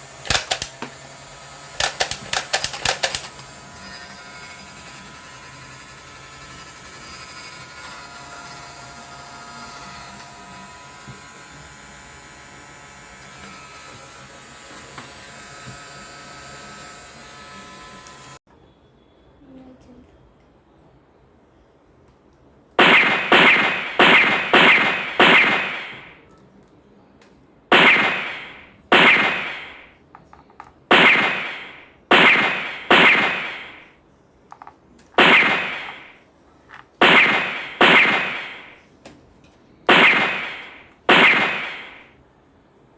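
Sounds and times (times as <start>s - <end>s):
toy gun bangs: 0.0s - 1.0s, 1.8s - 3.5s, 22.8s - 26.3s, 27.7s - 30.0s, 30.9s - 33.9s, 34.5s - 38.8s, 39.9s - 42.2s.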